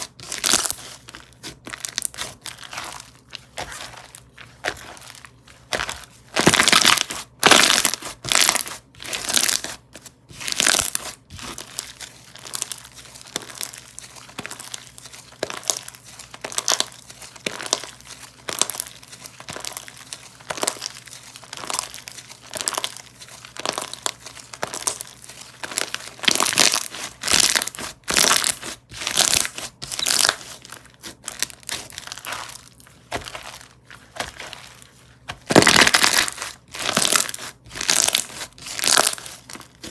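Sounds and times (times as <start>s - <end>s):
slime squished by hand crackling: 35.3s - 39.6s.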